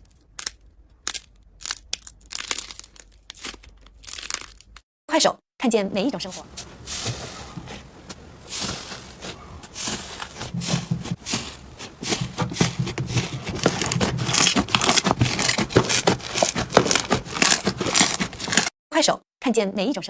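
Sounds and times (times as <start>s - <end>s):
slime crackling and popping: 0.0s - 4.8s, 13.2s - 18.7s.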